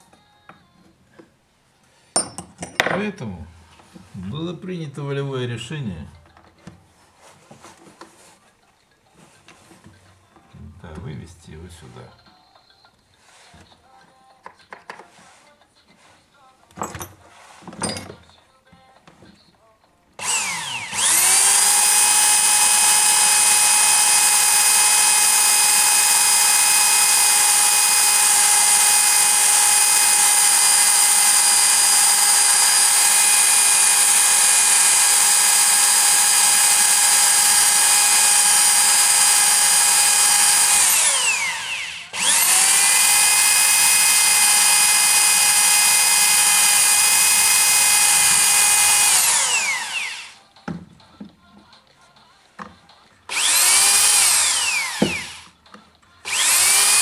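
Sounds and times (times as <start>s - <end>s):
power tool motor whining: 20.2s - 51.1s, 53.3s - 57.0s.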